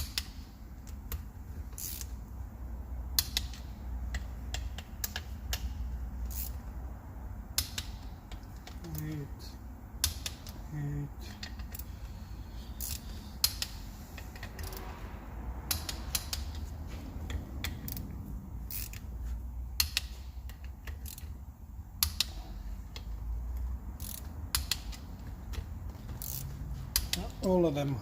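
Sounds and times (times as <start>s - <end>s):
torque wrench ratchet clicking: 0.0s - 2.2s, 3.1s - 6.7s, 11.2s - 14.8s, 15.7s - 16.6s, 17.3s - 19.1s, 19.8s - 21.4s, 22.0s - 27.3s.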